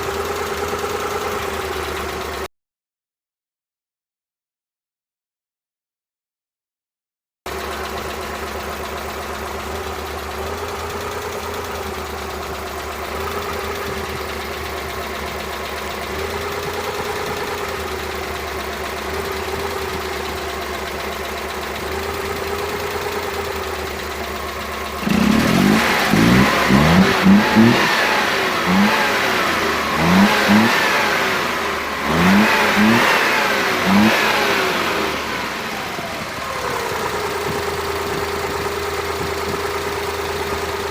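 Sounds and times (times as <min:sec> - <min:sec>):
car engine idling and revving: 0:00.0 - 0:02.5, 0:07.5 - 0:40.9.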